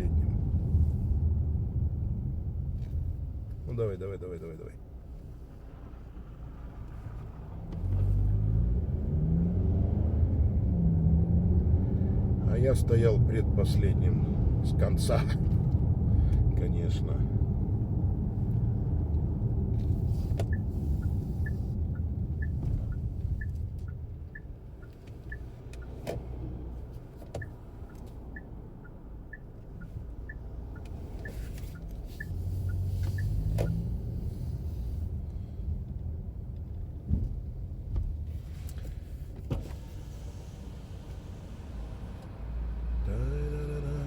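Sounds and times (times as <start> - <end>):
car engine and road rumble: 0.0 - 44.0
turn signal ticking: 17.5 - 38.9.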